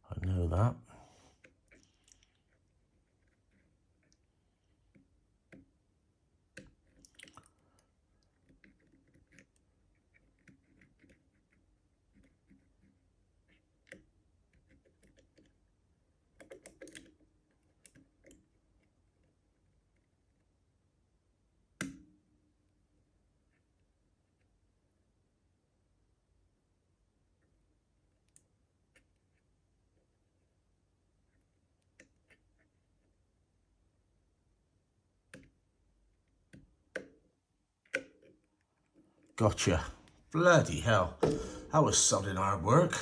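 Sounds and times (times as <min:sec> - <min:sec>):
sharp metallic knock: 0:41.2 - 0:41.7.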